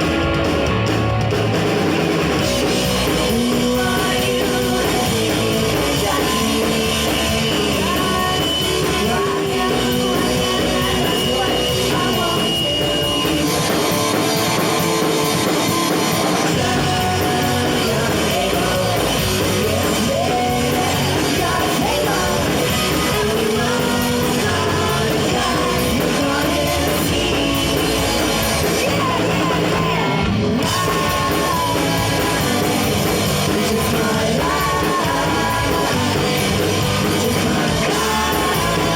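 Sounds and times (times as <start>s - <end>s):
punk rock band playing live: 0.0s - 38.9s
person singing: 2.5s - 38.9s.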